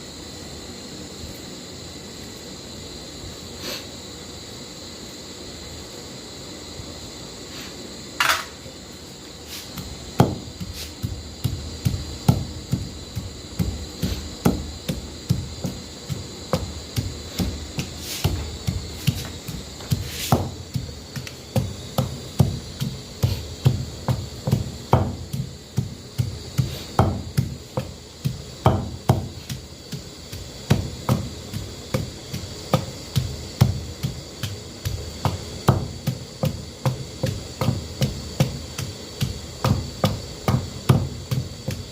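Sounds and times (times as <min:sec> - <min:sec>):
dull knocks on hard surface: 0:09.8 - 0:41.9.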